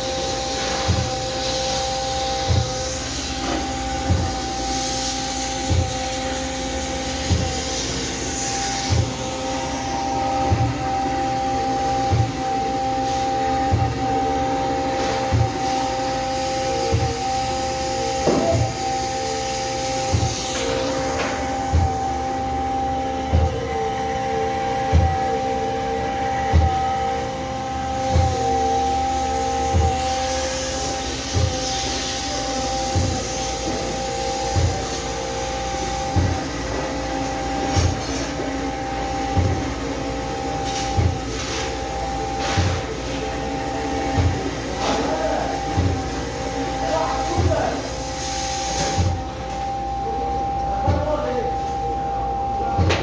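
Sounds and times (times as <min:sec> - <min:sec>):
hiss: 0:00.0 - 0:22.2, 0:28.0 - 0:49.2
machine hum: 0:00.0 - 0:53.0.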